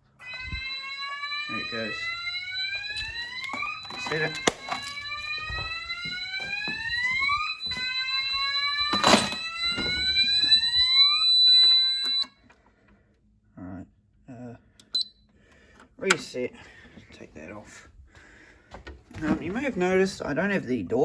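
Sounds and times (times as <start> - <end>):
fire alarm rising sweep tone: 0.0 - 12.4, 14.9 - 15.2
high-pitched beep: 15.0 - 15.2.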